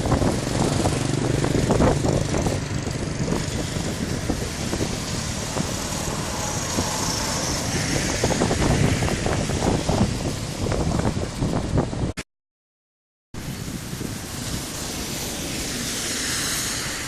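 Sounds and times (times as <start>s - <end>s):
high jet whine: 0.0s - 10.8s
wind on microphone: 0.0s - 12.2s, 13.4s - 17.0s.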